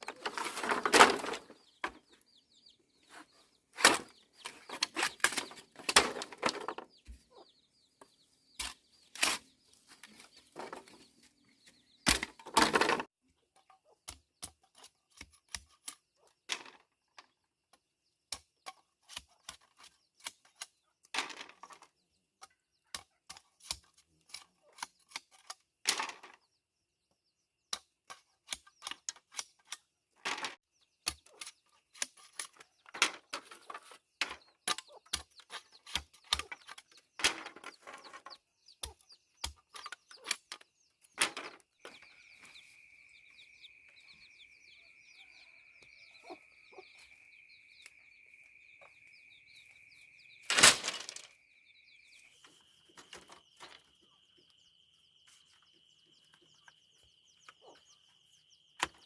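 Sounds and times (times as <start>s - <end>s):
faint high chirping: 31.0s - 59.0s.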